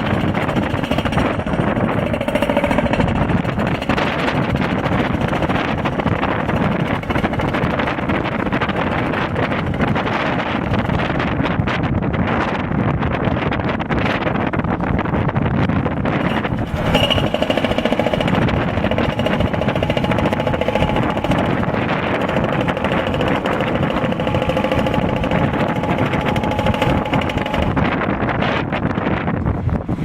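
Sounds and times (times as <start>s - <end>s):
hydraulic breaker hammering concrete: 0.0s - 11.7s, 16.2s - 28.2s
wind buffeting microphone: 0.0s - 30.0s.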